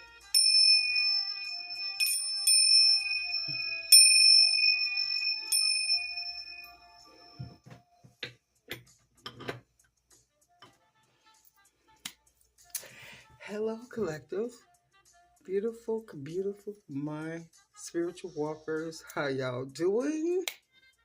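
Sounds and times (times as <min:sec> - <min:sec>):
bell-like chime ringing: 0:00.0 - 0:07.6.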